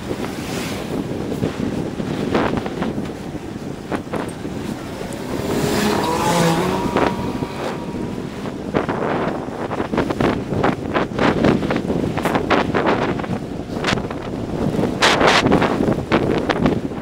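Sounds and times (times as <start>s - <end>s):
wind rushing over microphone: 0.0s - 17.0s
car passing: 2.4s - 10.6s.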